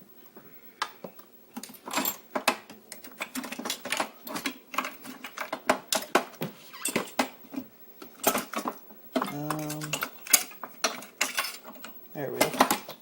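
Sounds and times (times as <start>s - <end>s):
metal lockpicking tools clattering: 8.2s - 13.0s.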